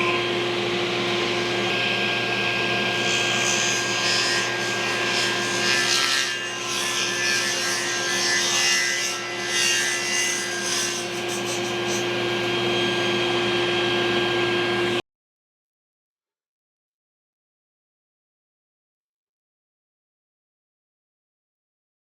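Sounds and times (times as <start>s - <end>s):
machine hum: 0.0s - 5.3s, 11.2s - 15.0s.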